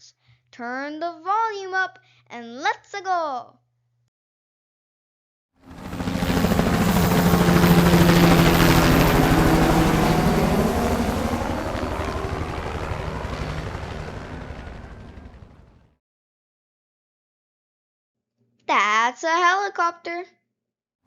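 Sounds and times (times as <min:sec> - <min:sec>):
helicopter rotor blades beating: 0:05.6 - 0:15.9.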